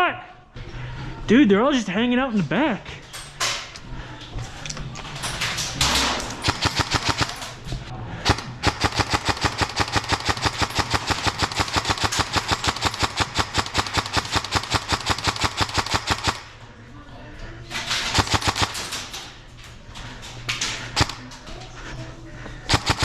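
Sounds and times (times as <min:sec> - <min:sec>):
airsoft rifle rapid fire: 0:05.9 - 0:07.6, 0:08.2 - 0:16.6, 0:18.1 - 0:19.0, 0:21.0 - 0:21.2, 0:22.7 - 0:23.0.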